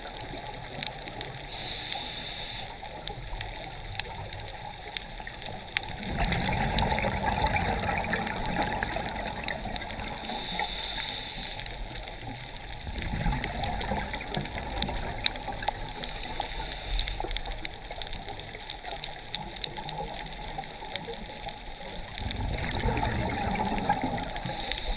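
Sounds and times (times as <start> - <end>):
crackle of small clicks: 0.0 - 24.9
regulator hissing inhalations: 1.5 - 2.8, 10.2 - 11.8, 15.9 - 17.3, 24.4 - 24.9
bubbling exhalations underwater: 5.9 - 10.3, 12.8 - 15.9, 22.2 - 24.6.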